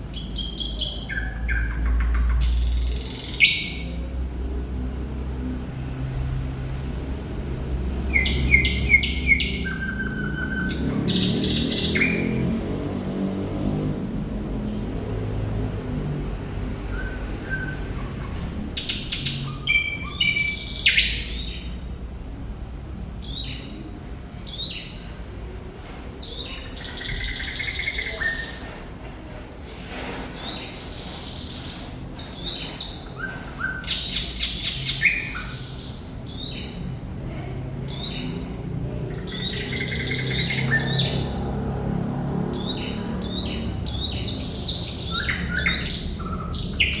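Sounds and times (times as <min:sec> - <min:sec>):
thrush nightingale singing: 0:00.0 - 0:04.1, 0:07.2 - 0:12.5, 0:16.2 - 0:21.8, 0:25.9 - 0:28.7, 0:31.0 - 0:36.8, 0:37.9 - 0:41.6, 0:42.6 - 0:47.0.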